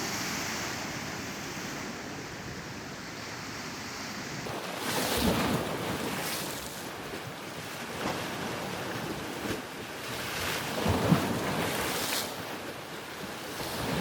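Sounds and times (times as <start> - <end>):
ocean waves breaking on shore: 0.0 - 14.0.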